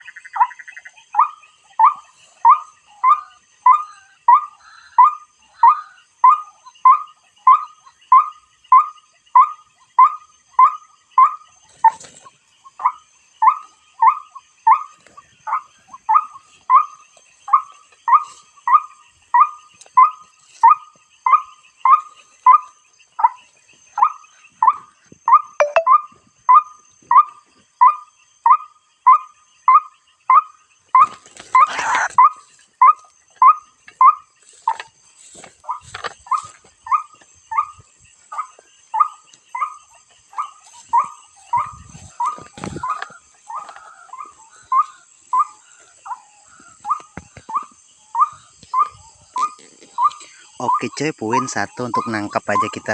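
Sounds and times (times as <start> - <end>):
waterhen calling: 31.0 - 34.8.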